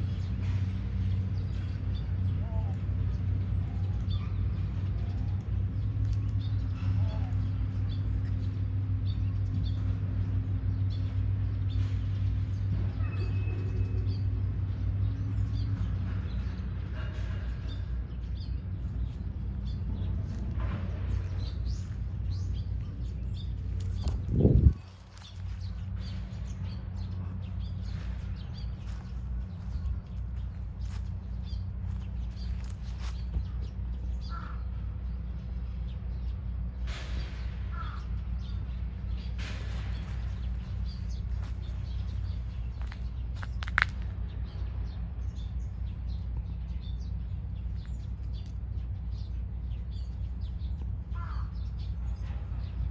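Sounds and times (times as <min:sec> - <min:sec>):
low rumble: 0:00.0 - 0:52.9
small birds chirping: 0:00.0 - 0:52.9
steady low hum: 0:00.0 - 0:52.9
short bird calls: 0:51.1 - 0:51.9.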